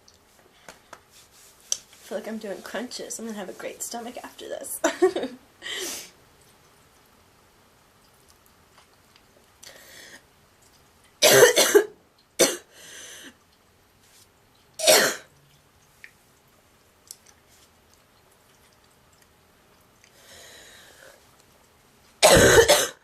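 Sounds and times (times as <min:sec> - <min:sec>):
girl coughing: 0:11.2 - 0:12.7, 0:14.8 - 0:15.3, 0:22.2 - 0:23.0.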